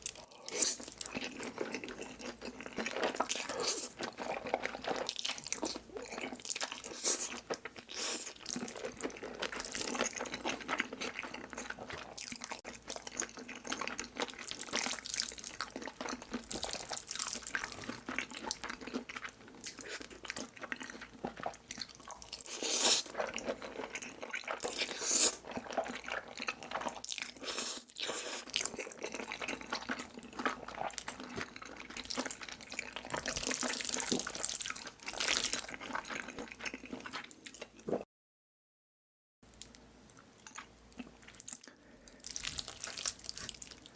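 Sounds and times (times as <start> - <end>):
slurping noodles: 22.4 - 23.4, 24.6 - 25.7.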